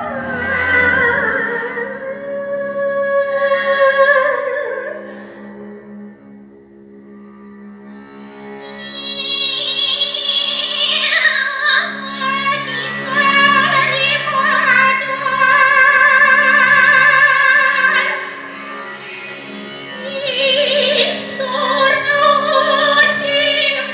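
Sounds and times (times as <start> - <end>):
low drone: 0.0 - 3.4, 12.1 - 23.9
woman singing operatically: 9.3 - 18.4, 20.0 - 23.9.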